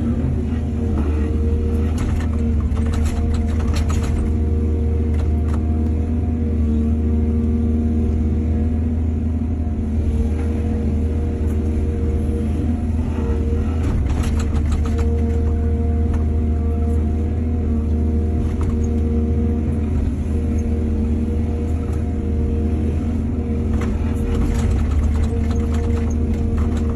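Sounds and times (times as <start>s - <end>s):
excavator diesel engine rumbling: 0.0s - 26.9s
metal clanks and rattles: 1.8s - 4.4s, 13.8s - 15.7s, 23.8s - 26.9s.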